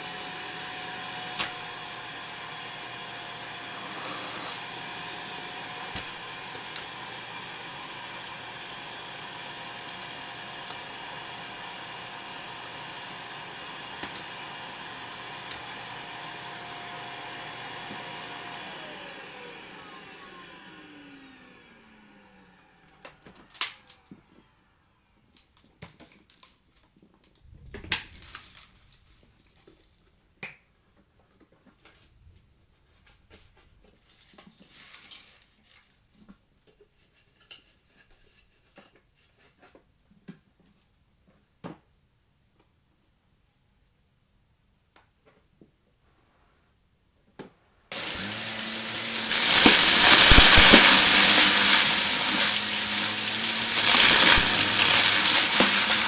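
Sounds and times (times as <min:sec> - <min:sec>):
vacuum cleaner motor: 0:00.0 - 0:23.0, 0:47.9 - 0:56.0.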